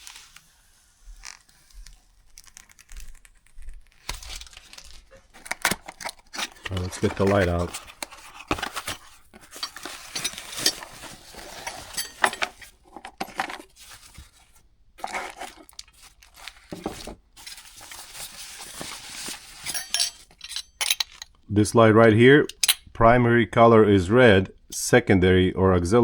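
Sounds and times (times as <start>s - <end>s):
packaging rustling and tearing: 0.0s - 20.4s
glass and metal parts clinking: 8.7s - 13.4s, 19.2s - 21.4s, 22.4s - 22.9s.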